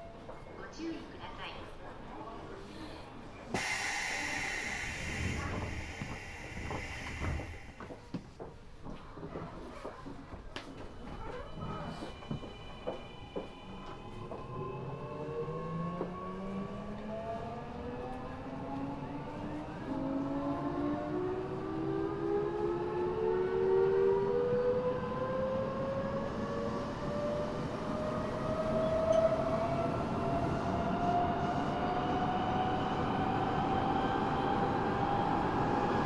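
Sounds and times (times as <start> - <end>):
wheels rumbling on rail: 3.6 - 8.6, 21.4 - 36.0.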